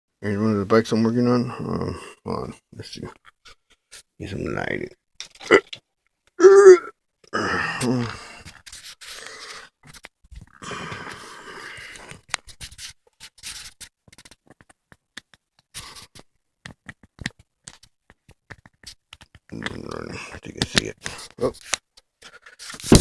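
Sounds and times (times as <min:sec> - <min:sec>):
hand scraping and rustling objects: 0:08.3 - 0:23.0.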